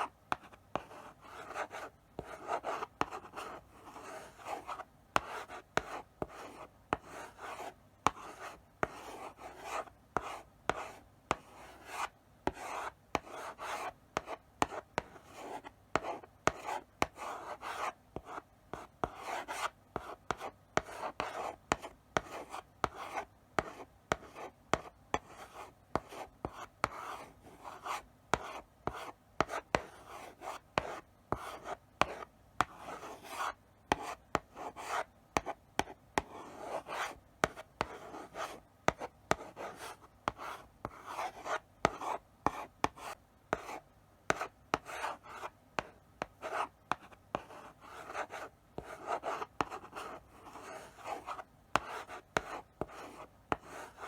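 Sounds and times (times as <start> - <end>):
chalk tapping on board: 0.3 - 7.4, 23.6 - 25.4, 27.8 - 54.0
chalk scratching on blackboard: 0.3 - 18.0, 18.8 - 54.0.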